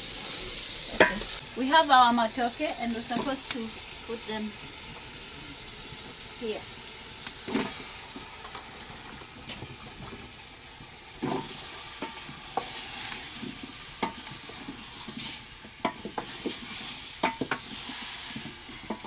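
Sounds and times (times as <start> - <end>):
food sizzling in a pot: 0.0 - 19.0.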